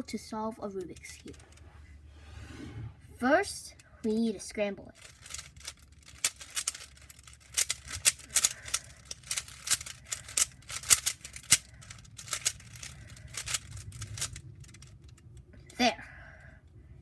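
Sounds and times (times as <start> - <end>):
plastic puzzle cube clicking: 5.0 - 15.3.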